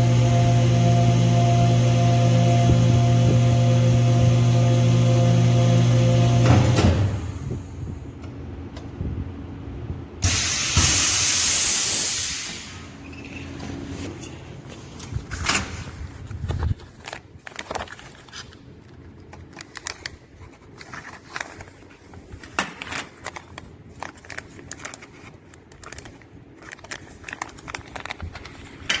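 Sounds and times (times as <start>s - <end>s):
vacuum pump humming: 0.0s - 8.3s
plastic crinkling: 16.2s - 29.0s.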